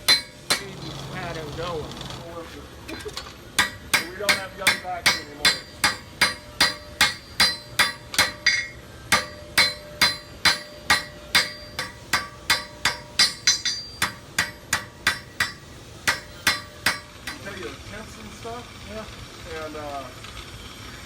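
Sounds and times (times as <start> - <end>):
hammer striking metal on anvil: 0.0 - 0.7, 3.6 - 17.6.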